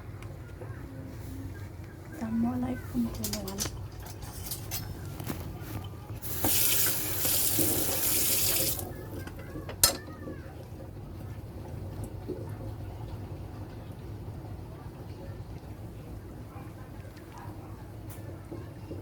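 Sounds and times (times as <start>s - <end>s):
water running from tap: 6.2s - 9.0s.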